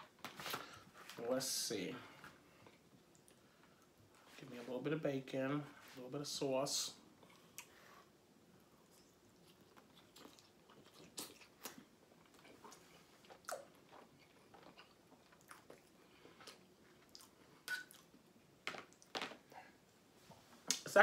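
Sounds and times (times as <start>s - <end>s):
person chewing food: 8.8s - 19.2s.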